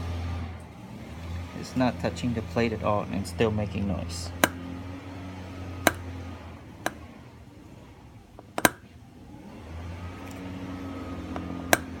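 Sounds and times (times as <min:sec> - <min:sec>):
car wheel turning with low hum: 0:00.0 - 0:12.0
sharp clicks from wheel: 0:04.4 - 0:04.6, 0:05.8 - 0:06.1, 0:08.4 - 0:08.9, 0:11.3 - 0:12.0.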